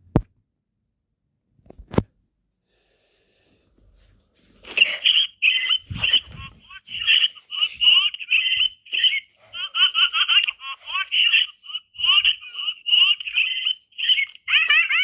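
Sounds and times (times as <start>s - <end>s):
high-pitched squeaky voice: 4.7s - 15.0s.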